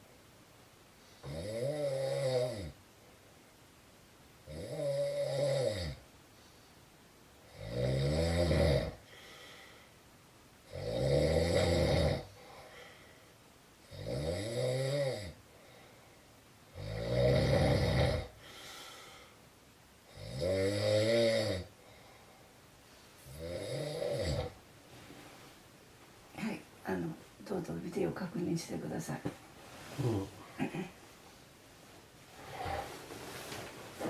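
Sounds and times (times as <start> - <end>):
loud pitched snoring: 1.2 - 2.8, 4.5 - 6.0, 7.5 - 9.0, 10.7 - 12.3, 13.9 - 15.4, 16.7 - 18.4, 20.1 - 21.7, 23.2 - 24.6
faint breathing: 9.0 - 10.0, 12.3 - 13.4, 18.4 - 19.5, 21.8 - 23.3.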